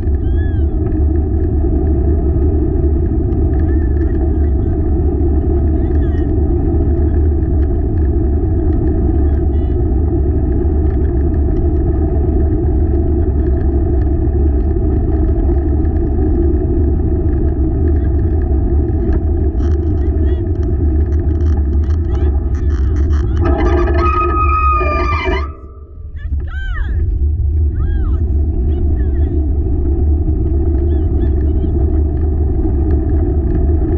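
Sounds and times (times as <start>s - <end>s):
dog rig rolling rumble: 0.0s - 33.9s.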